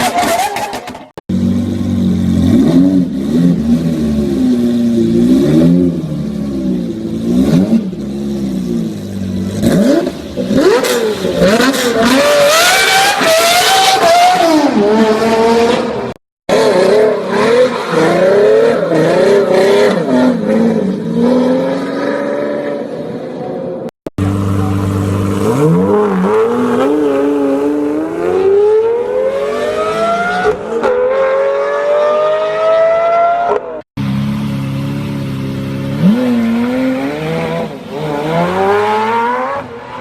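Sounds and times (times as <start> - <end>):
sports car engine revving: 24.2 - 39.7.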